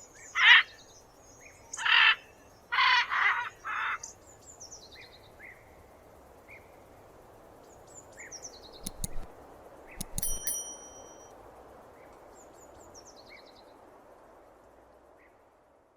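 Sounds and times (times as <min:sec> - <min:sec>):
sharp clicks: 0:08.8 - 0:11.2
bell-like ringing note: 0:10.0 - 0:11.3.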